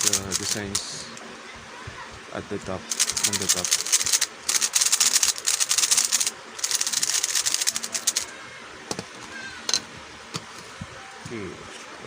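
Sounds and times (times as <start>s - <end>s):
rapid plastic clicking of cube: 0.0s - 0.8s, 2.9s - 8.3s.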